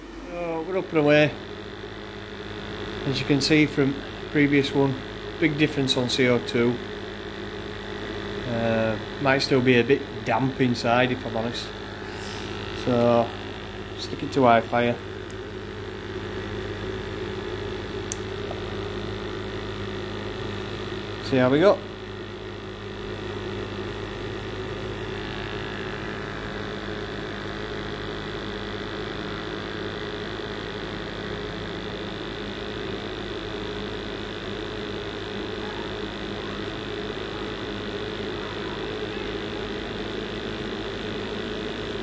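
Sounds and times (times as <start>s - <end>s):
gas boiler humming and rushing: 0.0s - 42.0s.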